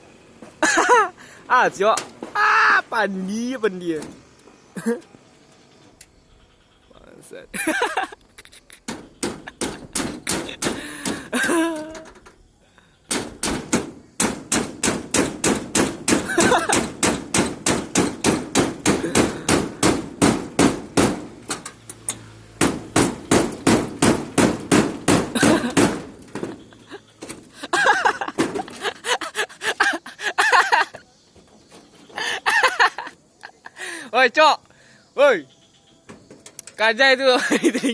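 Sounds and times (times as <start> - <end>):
rapid sharp strikes: 8.9 - 11.3, 13.1 - 21.6, 22.6 - 26.6.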